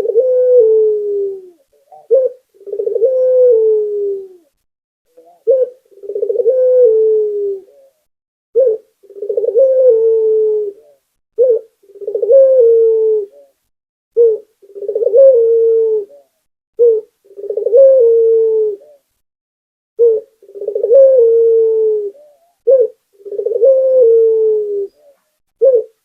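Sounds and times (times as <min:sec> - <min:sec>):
dove cooing: 0:00.0 - 0:19.1, 0:20.0 - 0:26.0.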